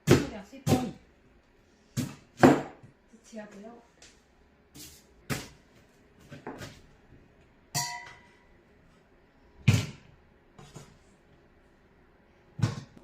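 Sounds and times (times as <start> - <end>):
metallic ring: 7.7 - 8.5.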